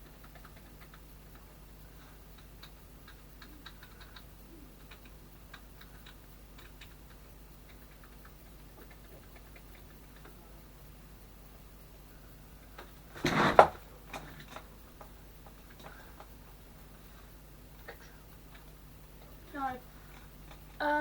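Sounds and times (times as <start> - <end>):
computer keys clicking: 0.0 - 1.6, 2.3 - 10.4
low steady hum: 0.0 - 21.0.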